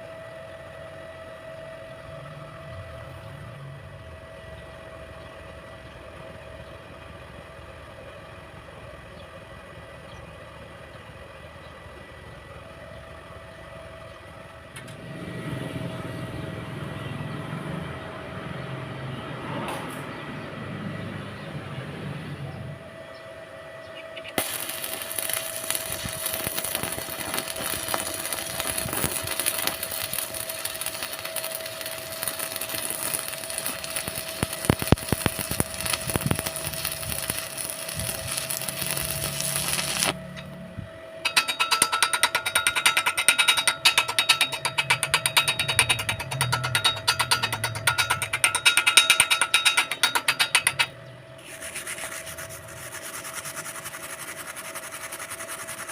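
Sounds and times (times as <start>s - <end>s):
welding arc crackling: 24.4s - 40.6s, 41.2s - 55.9s.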